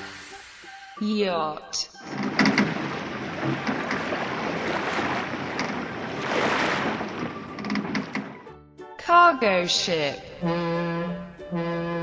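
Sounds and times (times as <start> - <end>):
rush of wind and sea water: 2.0 - 8.5.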